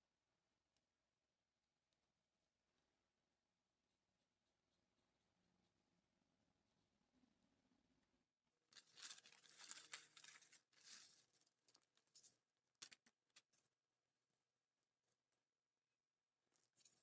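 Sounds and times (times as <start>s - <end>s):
crinkling and tearing material: 8.8s - 12.2s.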